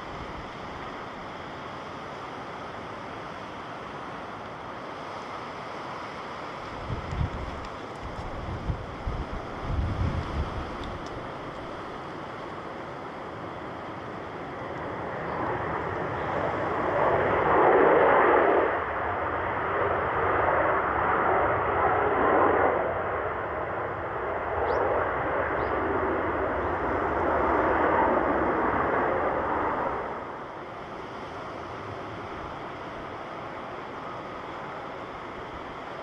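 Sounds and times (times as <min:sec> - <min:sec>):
jet engines roaring: 0:00.0 - 0:36.0.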